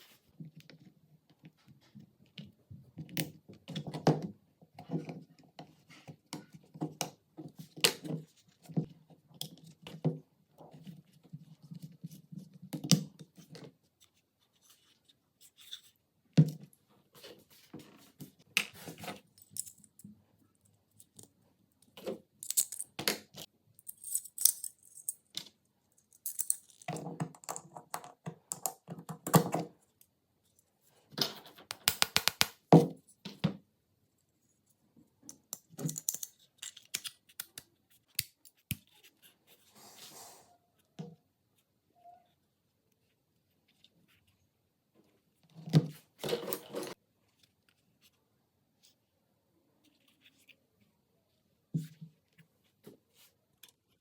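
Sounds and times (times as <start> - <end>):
small metal parts rattling: 23.8 - 25.4.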